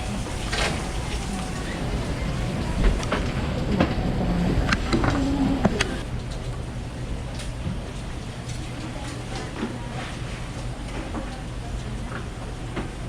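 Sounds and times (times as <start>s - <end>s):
faint voices: 0.0s - 6.1s
steady low hum: 0.0s - 8.6s.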